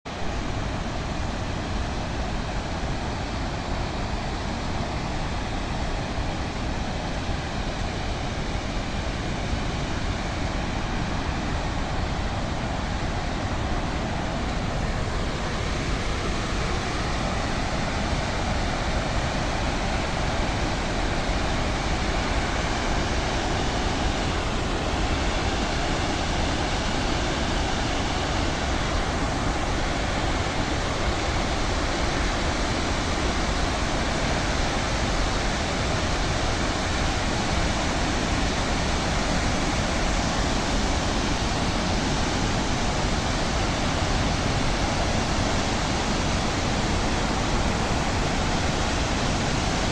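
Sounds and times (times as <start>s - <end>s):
rushing water: 0.1s - 49.9s.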